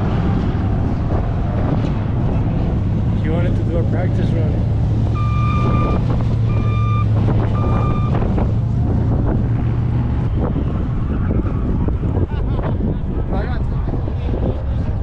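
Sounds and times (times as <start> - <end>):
low engine drone: 0.0 - 15.0
wind noise on microphone: 0.0 - 15.0
reversing alarm beeping: 5.2 - 8.2.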